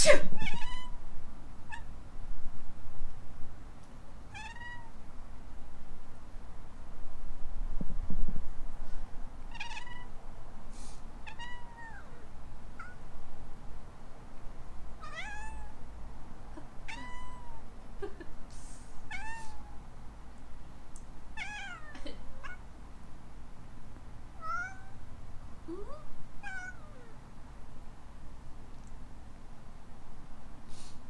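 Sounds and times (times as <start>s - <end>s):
kitten meowing: 0.4s - 1.0s, 4.3s - 4.9s, 9.5s - 10.1s, 11.3s - 12.2s, 15.0s - 15.8s, 16.9s - 17.7s, 19.1s - 19.9s, 21.4s - 22.6s, 24.4s - 25.0s, 25.8s - 27.1s.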